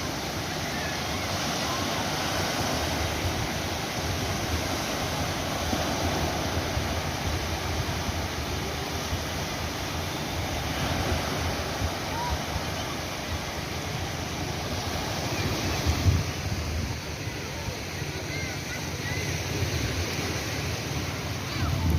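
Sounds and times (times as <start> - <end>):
ocean waves washing: 0.0 - 21.9
wind rumble on microphone: 15.6 - 17.2, 21.4 - 21.9.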